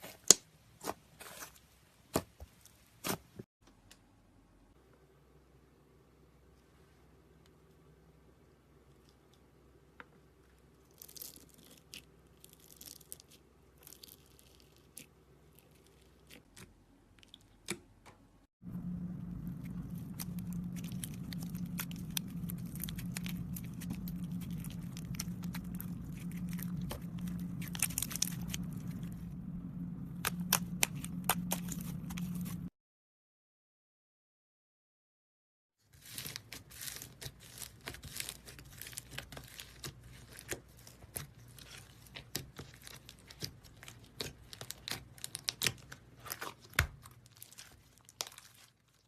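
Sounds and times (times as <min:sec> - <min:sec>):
steady low hum: 0:18.6 - 0:32.7
slime crackling and popping: 0:19.1 - 0:29.2, 0:30.0 - 0:32.7, 0:36.0 - 0:49.0.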